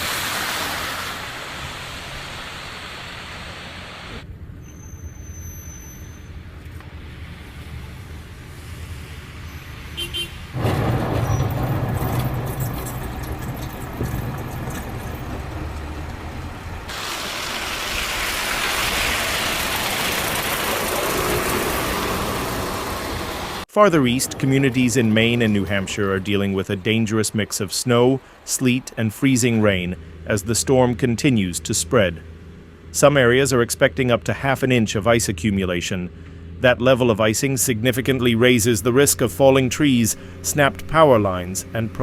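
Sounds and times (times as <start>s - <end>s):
loud low vehicle rumble: 0.0s - 42.0s
road noise haze: 0.0s - 42.0s.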